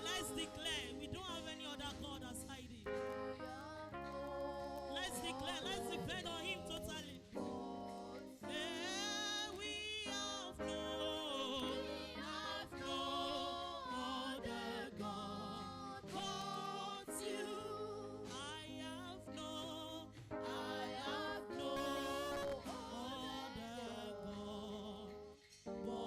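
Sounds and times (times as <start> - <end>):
church choir singing: 0.0 - 26.0.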